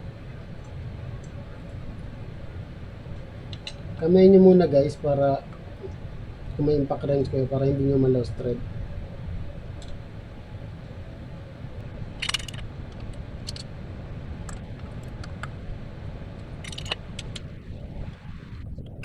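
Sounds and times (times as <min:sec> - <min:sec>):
steady low rumble: 0:00.0 - 0:19.0
metal bolts clinking: 0:12.2 - 0:13.7, 0:16.6 - 0:17.5.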